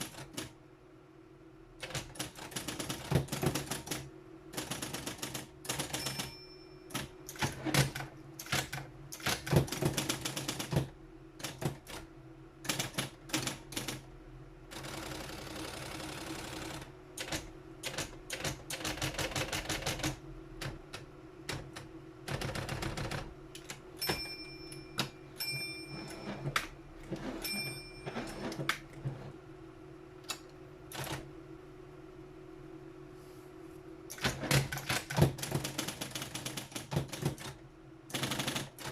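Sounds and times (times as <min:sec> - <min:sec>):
typewriter motor hum: 0:01.8 - 0:12.0, 0:14.7 - 0:20.2, 0:34.1 - 0:38.9
typewriter mechanical clatter: 0:01.8 - 0:14.0, 0:14.8 - 0:20.8, 0:21.5 - 0:24.2, 0:34.1 - 0:38.9
typewriter key strikes: 0:04.6 - 0:11.9
short high-pitched rings: 0:06.0 - 0:06.9, 0:24.0 - 0:26.6, 0:27.4 - 0:28.4.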